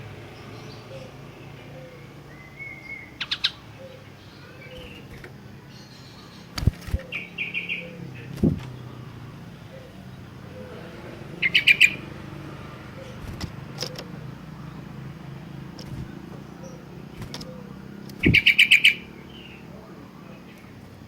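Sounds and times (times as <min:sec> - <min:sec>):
low steady hum: 0:00.0 - 0:21.0
bird chattering call: 0:11.4 - 0:12.1, 0:15.9 - 0:19.6.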